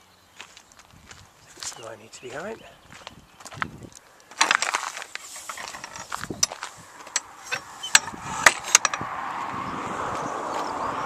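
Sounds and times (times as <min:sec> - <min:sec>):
sharp irregular clicks and knocks: 0:04.3 - 0:09.0.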